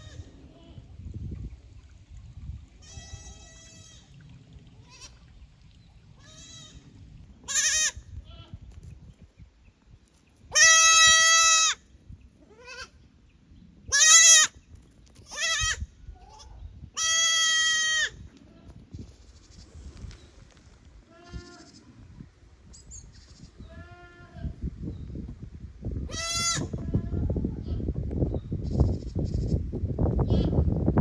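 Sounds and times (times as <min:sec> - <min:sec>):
young goats bleating: 0:02.8 - 0:04.0, 0:04.8 - 0:05.2, 0:06.2 - 0:06.8, 0:07.4 - 0:08.6, 0:10.5 - 0:11.8, 0:12.4 - 0:13.0, 0:13.9 - 0:14.6, 0:15.3 - 0:18.7, 0:21.1 - 0:21.9, 0:23.2 - 0:24.6, 0:26.1 - 0:27.9, 0:30.3 - 0:30.6.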